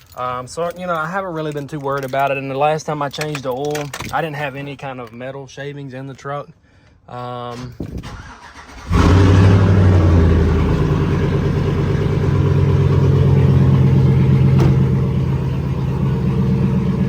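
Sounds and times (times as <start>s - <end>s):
pickup engine fast idle: 8.2s - 17.0s.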